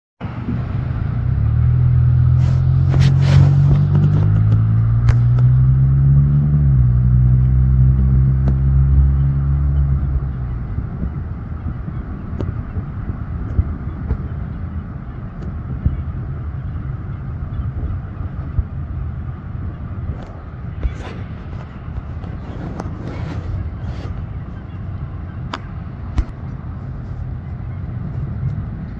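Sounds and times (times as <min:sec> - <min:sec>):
low engine rumble: 0:00.2 - 0:28.9
vehicle engine accelerating: 0:00.2 - 0:28.9.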